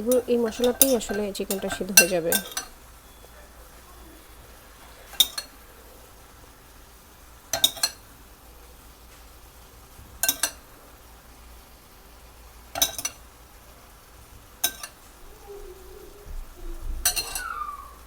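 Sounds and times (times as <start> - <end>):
spoon clinking against pan: 0.0 - 3.4, 5.1 - 5.5, 7.5 - 8.1, 10.2 - 10.6, 12.7 - 13.2, 14.6 - 15.0, 17.0 - 17.6.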